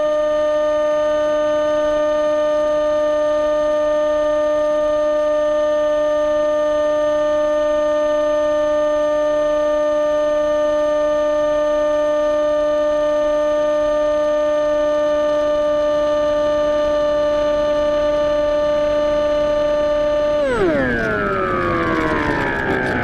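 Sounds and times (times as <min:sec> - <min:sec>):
electric motor and propeller whine: 0:20.3 - 0:23.0.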